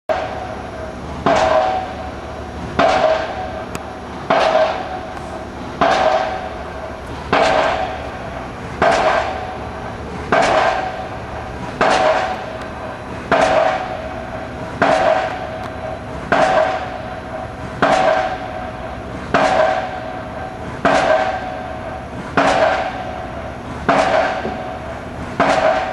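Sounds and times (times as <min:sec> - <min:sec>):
pile driver striking a pile: 0:01.2 - 0:02.0, 0:02.8 - 0:03.5, 0:04.3 - 0:15.6, 0:16.3 - 0:17.1, 0:17.8 - 0:18.6, 0:19.3 - 0:20.1, 0:20.8 - 0:21.6, 0:22.4 - 0:23.1, 0:23.8 - 0:24.8, 0:25.4 - 0:25.9.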